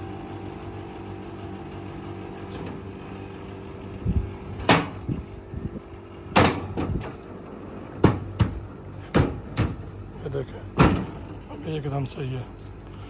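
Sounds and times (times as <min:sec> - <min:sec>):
air conditioner unit humming: 0:00.0 - 0:13.0
sharp knocks and clatters: 0:08.0 - 0:10.0.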